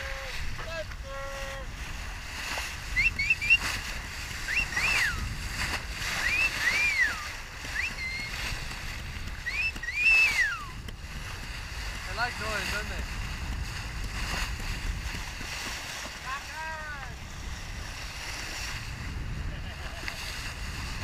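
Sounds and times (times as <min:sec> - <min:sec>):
water noise: 0:00.0 - 0:21.0
wind: 0:00.0 - 0:21.0
person whistling notes: 0:03.0 - 0:03.7, 0:04.4 - 0:05.2, 0:06.2 - 0:08.4, 0:09.4 - 0:10.8.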